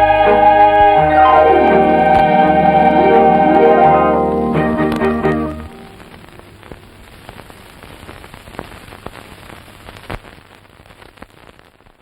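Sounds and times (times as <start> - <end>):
artificial rain patter: 3.8 - 12.0.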